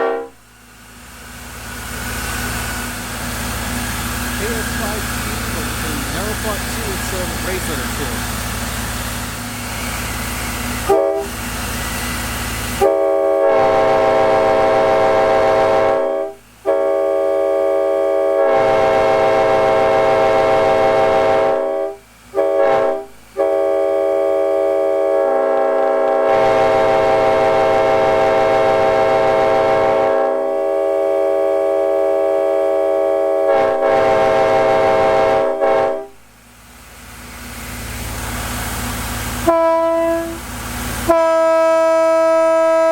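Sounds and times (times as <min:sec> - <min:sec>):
locomotive air horn blasts: 0:00.0 - 0:00.5, 0:10.8 - 0:11.5, 0:12.7 - 0:36.2, 0:39.4 - 0:42.9
steady mechanical hum: 0:00.0 - 0:41.2.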